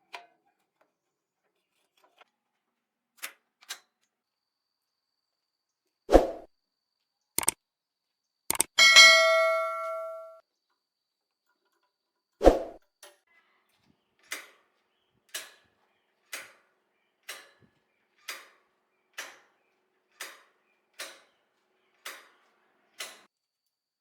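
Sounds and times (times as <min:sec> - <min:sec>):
hammer striking metal: 0:08.5 - 0:10.4.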